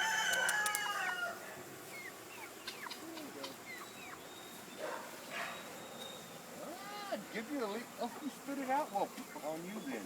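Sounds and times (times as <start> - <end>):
rooster crowing: 0.0 - 1.6
chickens chirping and clucking: 0.0 - 10.0.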